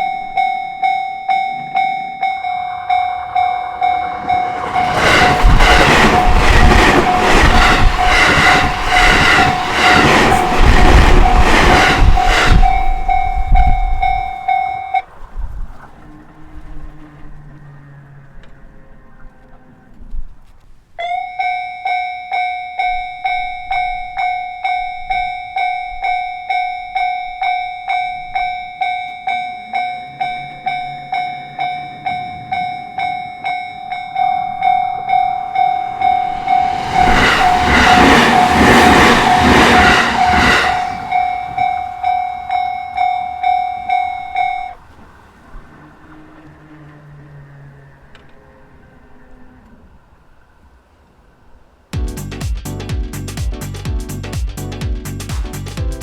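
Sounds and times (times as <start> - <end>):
level crossing warning bell: 0.0 - 15.2, 21.0 - 44.9
train wheels clacking over rails: 1.6 - 14.3, 31.6 - 42.6.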